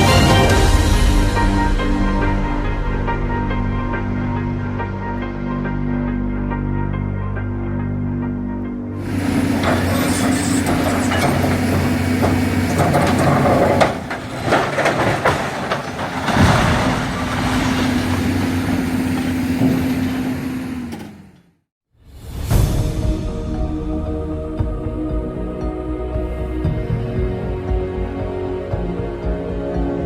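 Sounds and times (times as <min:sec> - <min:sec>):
diesel machinery running: 0:09.0 - 0:21.6
concrete debris cracking and falling: 0:09.3 - 0:18.7.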